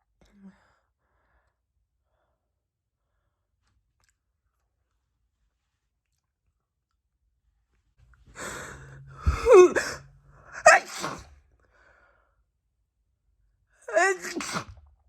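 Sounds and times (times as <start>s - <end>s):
breathy inhale: 8.3s - 12.3s
woman sneezing: 8.4s - 11.2s, 13.9s - 14.7s.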